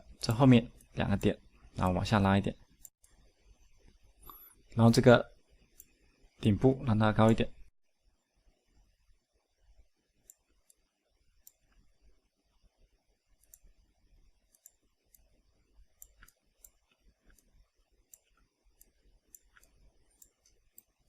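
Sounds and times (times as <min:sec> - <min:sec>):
computer mouse clicks: 0:03.9 - 0:04.6, 0:05.7 - 0:06.0, 0:11.4 - 0:11.8, 0:13.3 - 0:13.8, 0:14.4 - 0:21.0.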